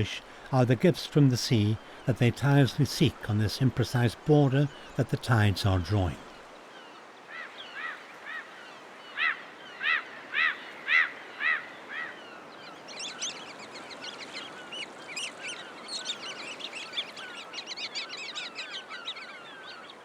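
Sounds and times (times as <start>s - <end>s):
loud shorebird calls: 0.0s - 20.0s
flock of waders twittering: 4.2s - 20.0s.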